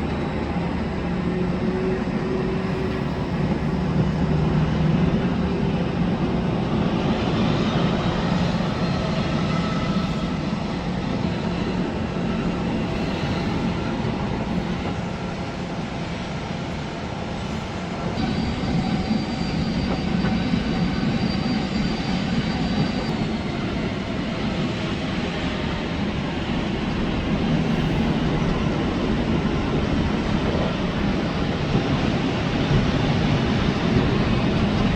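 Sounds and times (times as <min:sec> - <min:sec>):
airliner engine noise: 0:00.0 - 0:34.9
thin high whine: 0:17.3 - 0:23.3.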